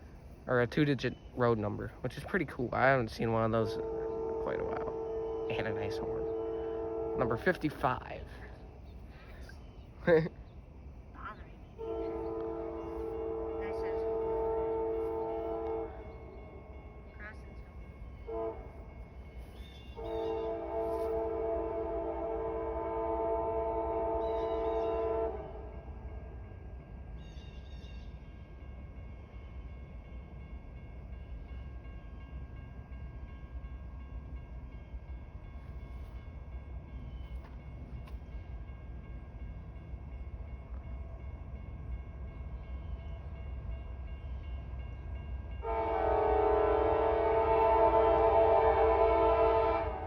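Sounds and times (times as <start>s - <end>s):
low train rumble: 0.0s - 50.0s
locomotive air horn chord: 3.6s - 7.5s, 11.8s - 16.2s, 18.3s - 18.9s, 20.0s - 25.9s, 45.6s - 50.0s.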